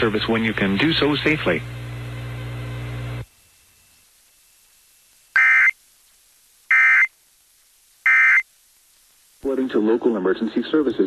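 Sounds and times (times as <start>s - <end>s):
low steady broadcast hum: 0.0s - 11.0s
harsh electronic data bursts: 5.4s - 5.8s, 6.7s - 7.1s, 8.1s - 8.4s.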